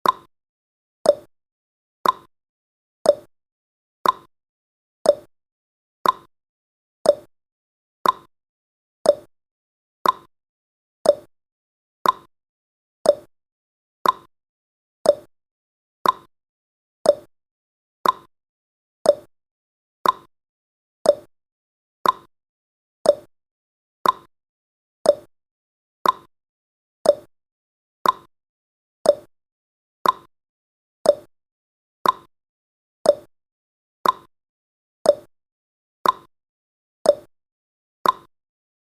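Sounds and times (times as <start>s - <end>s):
clock-like timer ticking: 0.0s - 0.3s, 1.1s - 1.3s, 2.0s - 2.3s, 3.1s - 3.3s, 4.0s - 4.3s, 5.1s - 5.3s, 6.0s - 6.3s, 7.1s - 7.3s, 8.0s - 8.3s, 9.1s - 9.3s, 10.0s - 10.3s, 11.0s - 11.3s, 12.0s - 12.3s, 13.0s - 13.3s, 14.0s - 14.3s, 15.0s - 15.3s, 16.0s - 16.3s, 17.0s - 17.3s, 18.0s - 18.3s, 19.0s - 19.3s, 20.0s - 20.3s, 21.0s - 21.3s, 22.0s - 22.3s, 23.0s - 23.3s, 24.0s - 24.3s, 25.0s - 25.3s, 26.0s - 26.3s, 27.0s - 27.3s, 28.0s - 28.3s, 29.0s - 29.3s, 30.0s - 30.3s, 31.0s - 31.3s, 32.0s - 32.3s, 33.1s - 33.3s, 34.0s - 34.3s, 35.1s - 35.3s, 36.0s - 36.3s, 37.1s - 37.3s, 38.0s - 38.3s.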